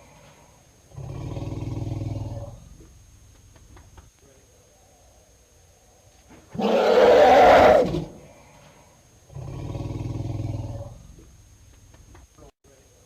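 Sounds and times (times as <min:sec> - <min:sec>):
elephant trumpeting: 0:06.6 - 0:08.1.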